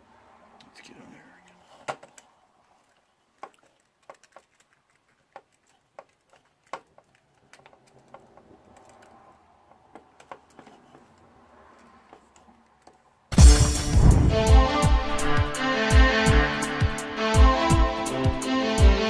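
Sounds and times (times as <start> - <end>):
soft ticks and rustle: 0.6 - 13.2
small parts clicking and tapping: 1.9 - 13.1.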